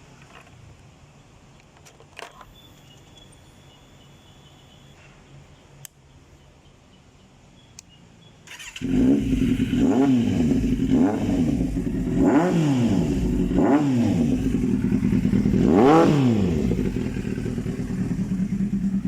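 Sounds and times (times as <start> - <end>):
motorcycle engine revving: 8.5 - 19.0.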